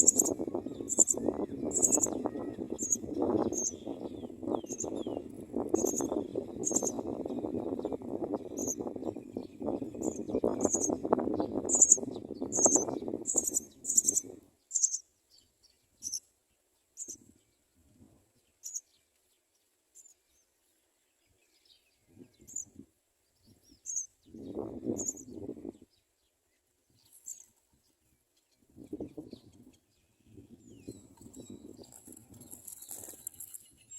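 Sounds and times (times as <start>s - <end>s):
sparrows chirping: 0.0s - 17.7s, 18.4s - 33.9s.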